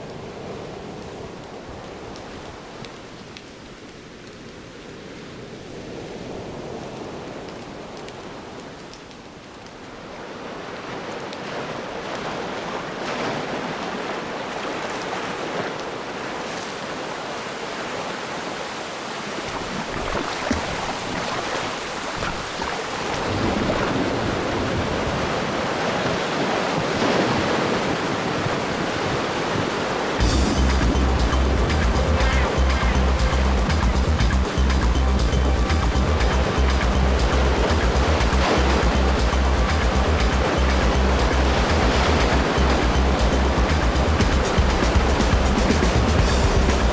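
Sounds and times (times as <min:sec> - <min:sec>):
waves washing and breaking: 0:00.0 - 0:46.9
deep rumble: 0:30.2 - 0:46.9.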